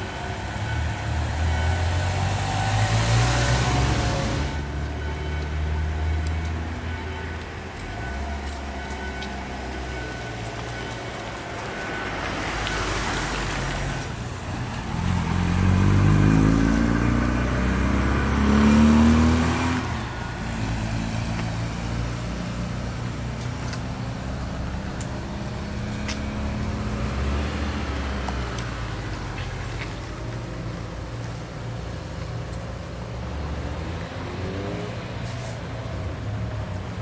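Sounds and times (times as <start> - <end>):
vehicle engine speeding up: 14.6 - 22.8, 33.2 - 35.2.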